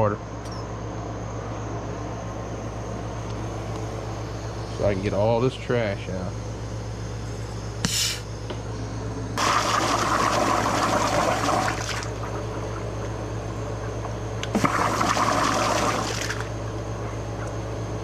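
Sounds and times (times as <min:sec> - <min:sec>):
water splashing in plastic tank: 0:09.4 - 0:12.4, 0:14.5 - 0:16.6.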